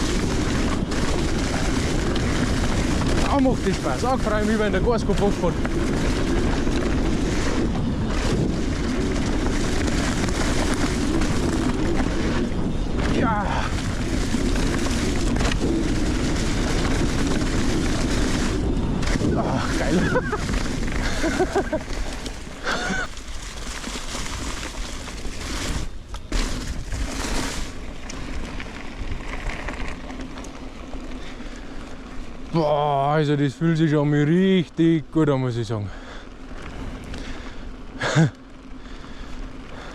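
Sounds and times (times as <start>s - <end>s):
wind rushing over microphone: 0.0s - 30.1s
bike rumbling and rattling: 0.0s - 39.9s.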